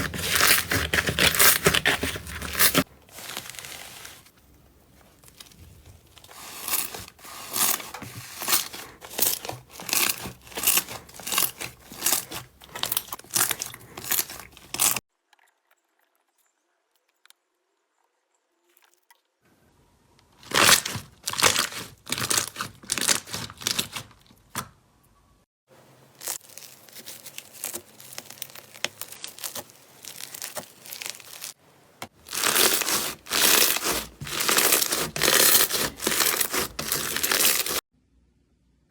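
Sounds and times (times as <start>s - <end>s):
slime squishing by hand: 0.0s - 15.0s, 26.2s - 37.8s.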